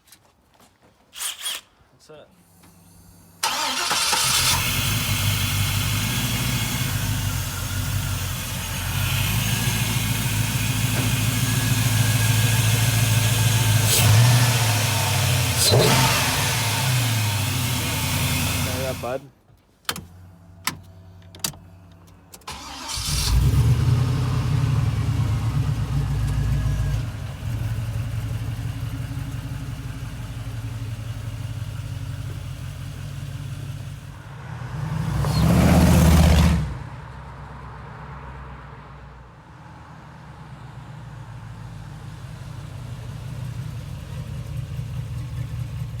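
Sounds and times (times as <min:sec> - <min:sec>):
car engine idling: 0:02.4 - 0:19.3, 0:20.0 - 0:34.3, 0:40.4 - 0:46.0
car engine starting: 0:02.4 - 0:37.8, 0:39.8 - 0:46.0
engine revving: 0:03.4 - 0:19.2, 0:22.5 - 0:37.0.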